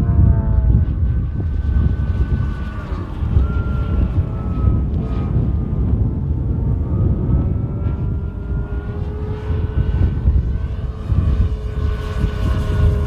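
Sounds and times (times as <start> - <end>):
model airplane motor whine: 0.0 - 13.0
wind rumble on microphone: 0.0 - 13.0.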